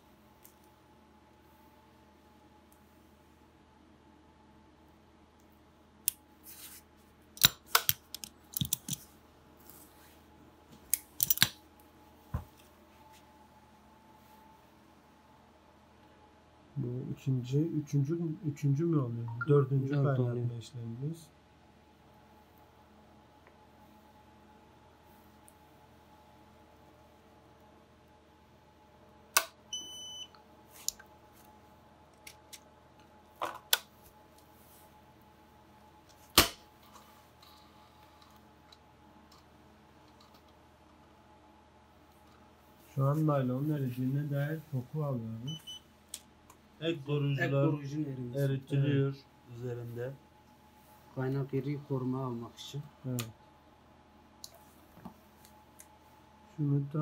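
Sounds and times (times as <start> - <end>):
hand tools clicking and snapping: 10.9 - 11.6.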